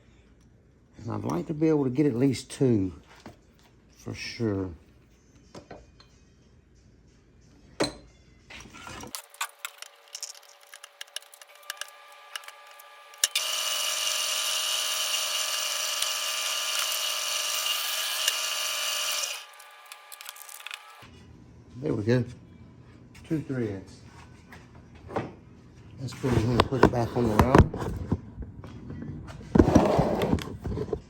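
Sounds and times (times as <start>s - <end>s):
power tool motor whine: 9.2s - 21.0s.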